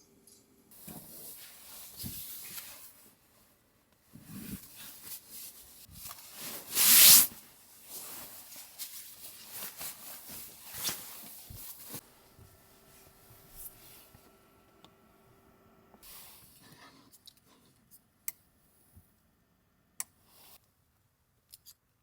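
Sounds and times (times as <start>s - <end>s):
rubbing and rustling: 4.1s - 12.1s
faint steady hum: 7.5s - 21.4s.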